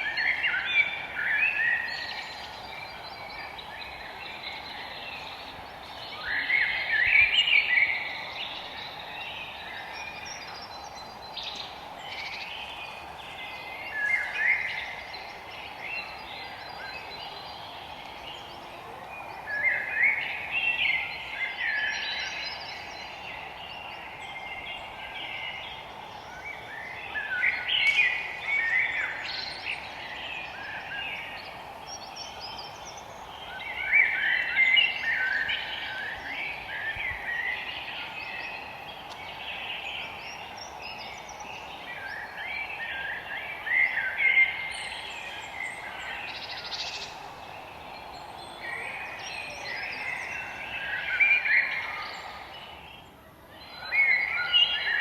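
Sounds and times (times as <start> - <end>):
birds chattering song: 0.0 - 55.0
steady background noise: 0.0 - 55.0.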